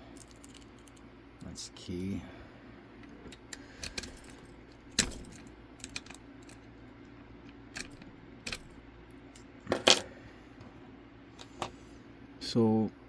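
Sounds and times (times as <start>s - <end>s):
metallic clicks of lockpicking tools: 3.3s - 6.6s, 7.5s - 8.8s.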